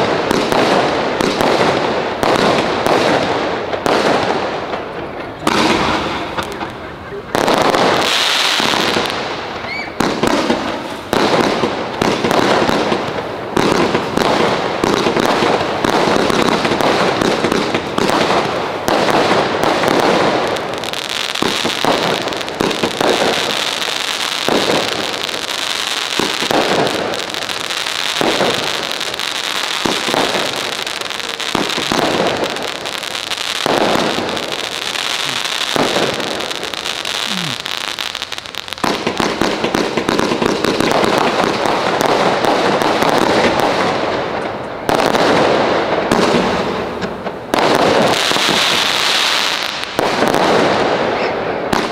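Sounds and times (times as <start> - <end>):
fireworks bangs and crackling: 0.0 - 51.9
steady high hiss: 16.7 - 40.7.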